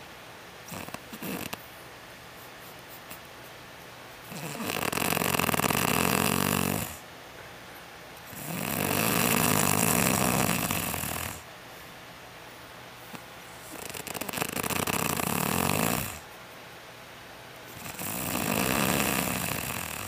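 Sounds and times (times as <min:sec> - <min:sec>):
woman snoring loudly: 0:00.7 - 0:01.6, 0:04.3 - 0:07.0, 0:08.3 - 0:11.4, 0:13.7 - 0:16.2, 0:17.8 - 0:20.0.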